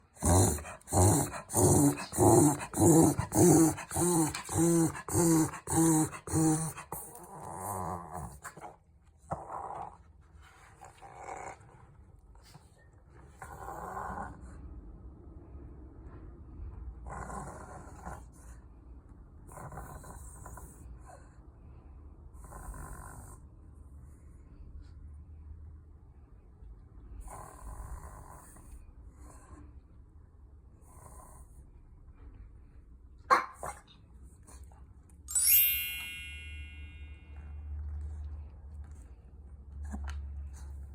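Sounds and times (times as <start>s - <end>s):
bright metallic chime: 35.3s - 37.5s.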